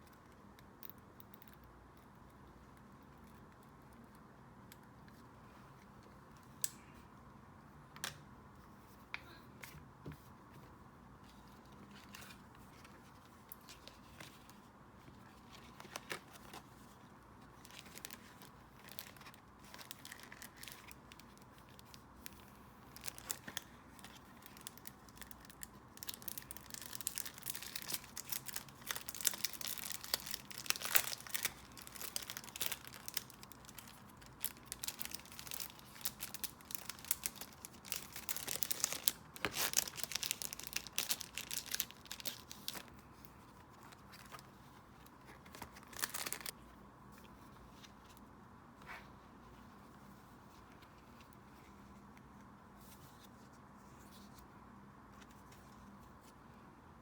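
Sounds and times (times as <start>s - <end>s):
packaging crinkling and tearing: 17.5s - 43.0s, 43.8s - 44.5s, 45.3s - 46.6s.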